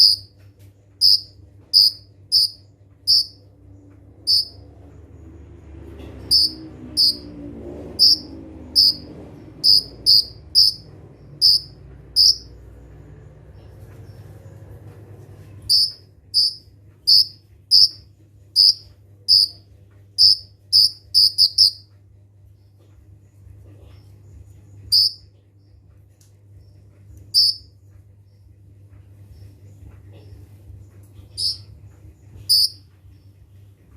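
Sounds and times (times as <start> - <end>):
steady low hum: 0.0 - 33.9
bird giving sharp high chirps: 1.0 - 3.4, 4.3 - 4.6, 6.3 - 7.3, 8.0 - 9.0, 9.6 - 12.5, 15.7 - 18.0, 18.6 - 19.6, 20.2 - 21.8, 27.3 - 27.7, 31.4 - 31.7, 32.5 - 32.8.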